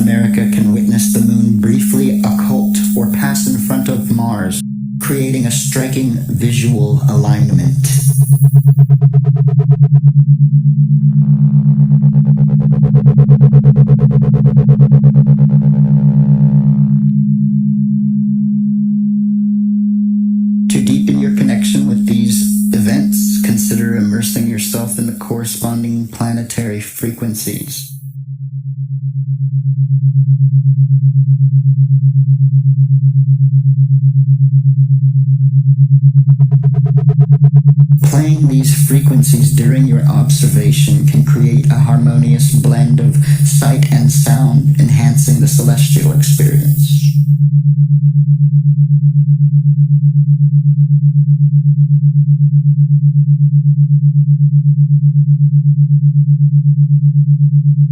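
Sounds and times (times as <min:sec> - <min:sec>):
buzzy pulsing tone: 0:00.0 - 0:17.4, 0:20.7 - 0:28.1, 0:35.9 - 0:47.4
pulsing low sine tone hum: 0:00.0 - 0:57.9.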